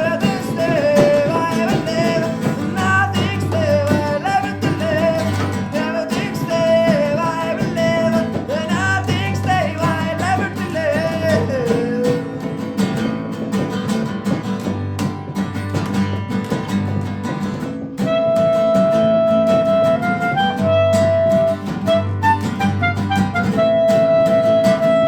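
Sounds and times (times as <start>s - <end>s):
acoustic guitars: 0.0s - 25.0s
percussion: 0.0s - 25.0s
wavering lead melody: 18.0s - 25.0s.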